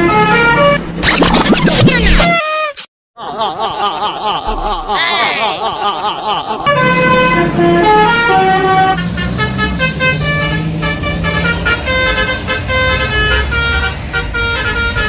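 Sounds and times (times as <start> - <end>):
bus horn playing a melody: 0.0 - 1.0, 6.7 - 15.0
low engine rumble: 6.7 - 15.0.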